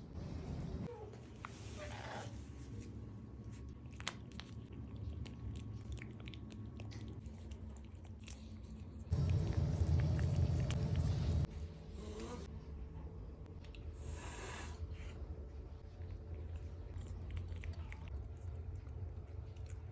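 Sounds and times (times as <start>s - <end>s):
low steady hum: 0.0s - 19.9s
cat licking and chewing: 2.7s - 11.5s, 15.8s - 19.9s
low rumble: 9.1s - 13.9s.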